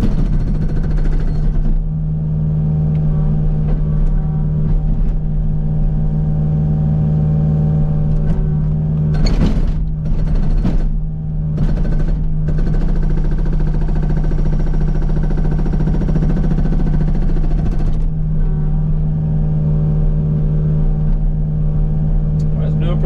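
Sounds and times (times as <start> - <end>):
hydraulic breaker pounding rock: 0.0 - 1.9, 8.1 - 18.2
excavator diesel engine running: 0.0 - 23.0.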